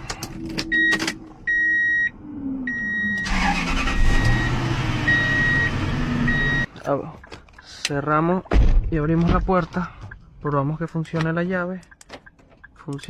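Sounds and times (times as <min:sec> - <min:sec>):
truck engine starting and running: 0:00.0 - 0:06.8
truck warning chime beeps: 0:00.6 - 0:06.7.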